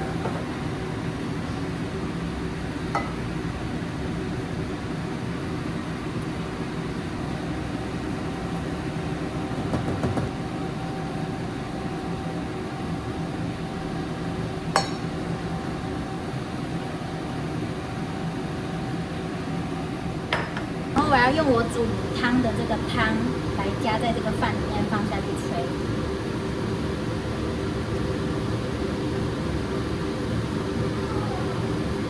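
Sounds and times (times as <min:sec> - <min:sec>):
range hood fan running: 0:00.0 - 0:32.0
utensil clink: 0:03.0 - 0:03.3, 0:14.8 - 0:15.2.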